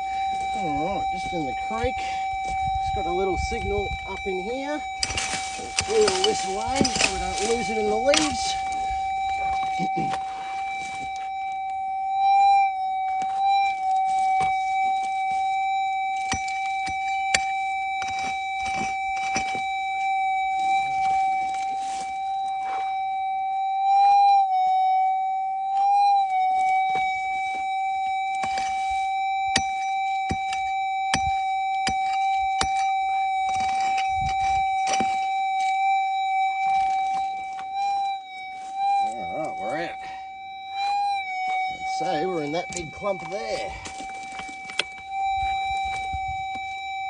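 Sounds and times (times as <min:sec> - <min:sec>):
metal detector high tone: 0:00.0 - 0:47.0
digging clicks and scrapes: 0:03.4 - 0:11.4, 0:13.1 - 0:23.0, 0:26.6 - 0:35.8, 0:36.6 - 0:39.8, 0:40.8 - 0:46.6.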